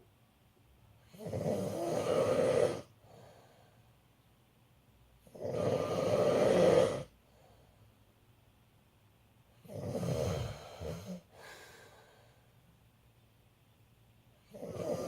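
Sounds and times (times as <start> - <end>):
man snoring: 1.1 - 2.9, 5.3 - 7.1, 9.6 - 11.3, 14.5 - 15.0.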